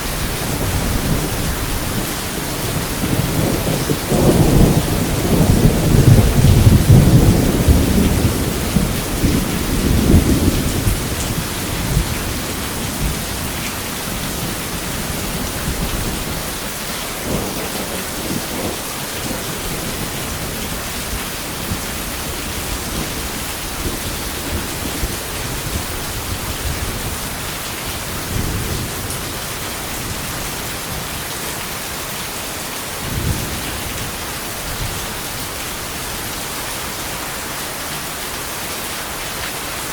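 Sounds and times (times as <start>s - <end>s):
thunder rumbling: 0.0s - 31.2s
rain hissing: 0.0s - 39.9s.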